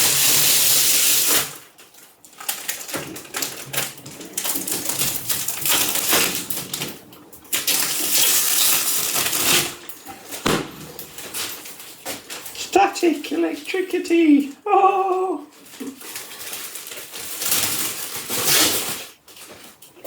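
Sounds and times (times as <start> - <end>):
plastic packaging crinkling: 15.6 - 19.8.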